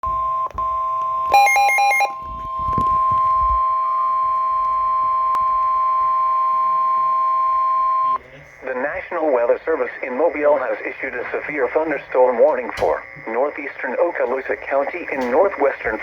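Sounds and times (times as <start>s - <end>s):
steady electronic alarm tone: 0.0s - 8.2s
rapid harsh beeps: 1.3s - 2.3s.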